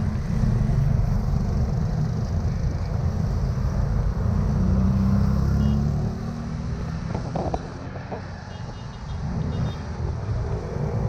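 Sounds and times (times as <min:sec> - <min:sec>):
motor vehicle rumble: 0:00.0 - 0:11.0.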